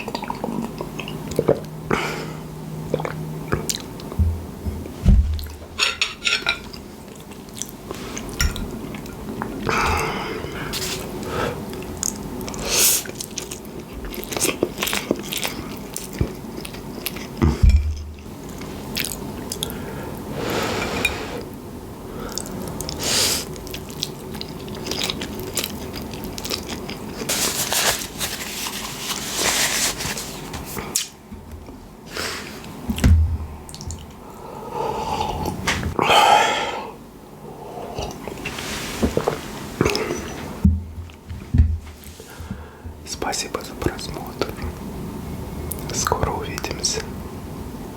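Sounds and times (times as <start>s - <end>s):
dull thumps: 4.2s - 5.8s, 17.4s - 18.3s, 40.6s - 43.0s.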